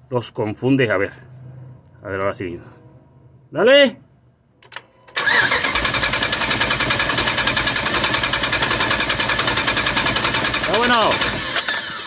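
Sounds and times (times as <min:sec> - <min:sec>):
engine cranking on starter: 0:05.1 - 0:12.0.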